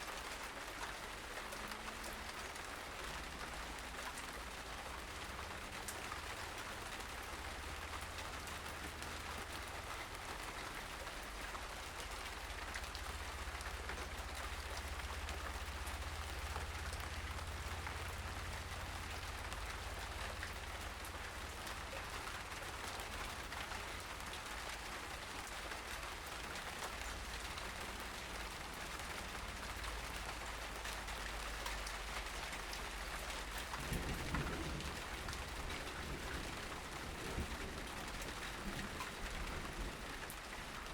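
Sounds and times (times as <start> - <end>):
low rumble on microphone: 33.6 - 40.2.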